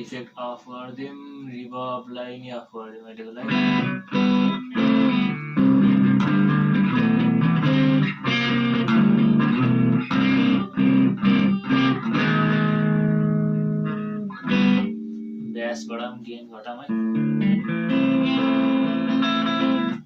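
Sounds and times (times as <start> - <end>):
overdriven electric guitar chords: 3.4 - 15.7, 16.9 - 20.0.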